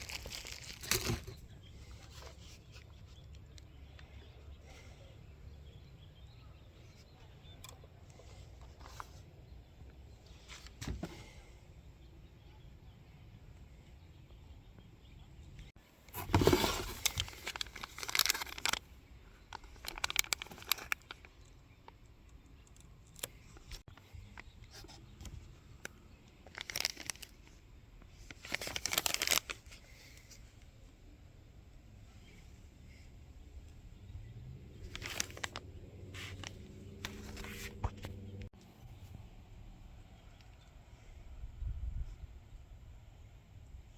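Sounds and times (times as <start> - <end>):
plastic and cardboard crinkling: 0.0 - 3.3, 16.1 - 18.9, 19.5 - 21.5, 23.1 - 27.6, 28.2 - 30.4, 34.8 - 38.2.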